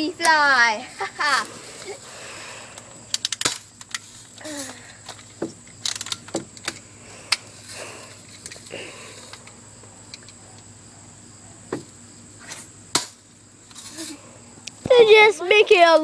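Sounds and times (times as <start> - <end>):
bb guns clicking and firing: 2.7 - 4.4.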